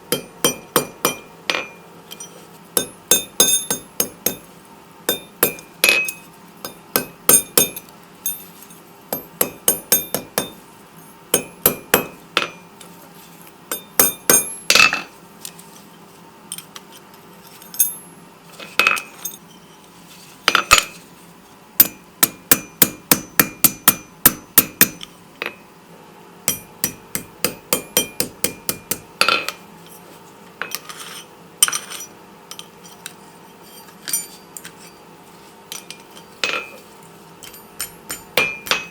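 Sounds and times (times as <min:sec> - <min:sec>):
hammer striking steel on anvil: 0:00.1 - 0:01.8, 0:02.8 - 0:04.5, 0:05.1 - 0:10.6, 0:11.3 - 0:12.7, 0:13.7 - 0:15.0, 0:21.8 - 0:25.6, 0:26.5 - 0:29.6, 0:37.4 - 0:38.9.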